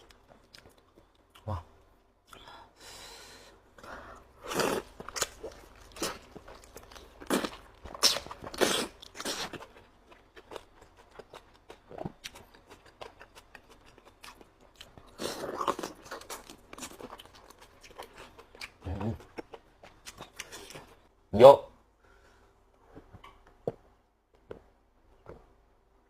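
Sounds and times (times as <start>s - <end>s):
biting and chewing: 4.4s - 21.0s.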